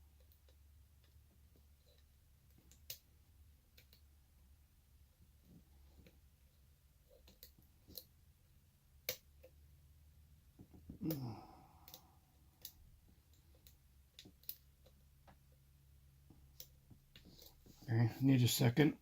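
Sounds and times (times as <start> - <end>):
person sighing: 11.0 - 12.2.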